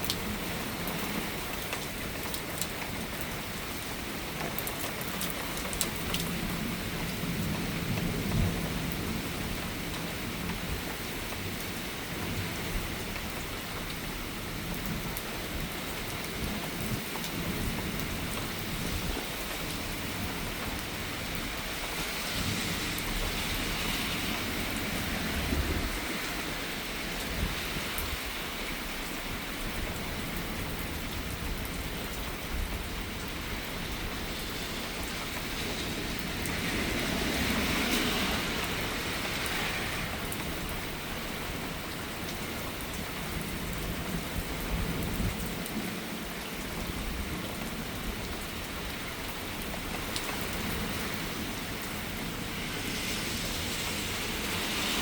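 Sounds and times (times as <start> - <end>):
heavy rain: 0.0 - 55.0
wind gusting on microphone: 6.0 - 49.1.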